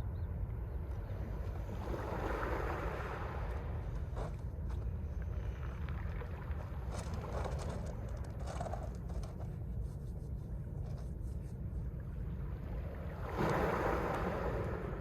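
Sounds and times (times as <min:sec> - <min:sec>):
wind rumble on microphone: 0:00.0 - 0:15.0
sea waves washing over shore: 0:01.3 - 0:04.3, 0:12.2 - 0:15.0
fine clicks in the wash: 0:05.8 - 0:11.6.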